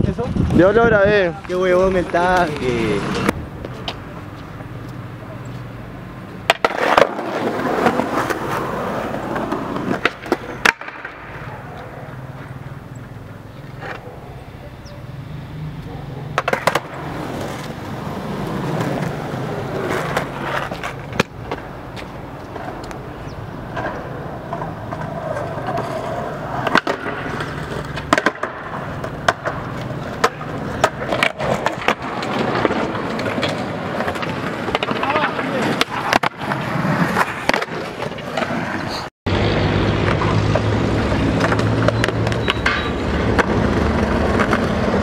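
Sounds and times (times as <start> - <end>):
skateboard wheels rumbling: 0.1 - 45.0
skateboard clacking on ground: 6.3 - 14.2, 16.3 - 39.1, 40.0 - 45.0.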